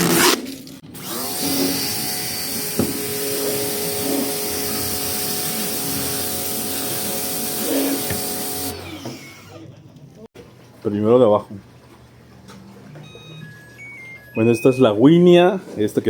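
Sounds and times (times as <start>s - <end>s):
pressure washer motor whine: 0.8s - 9.7s.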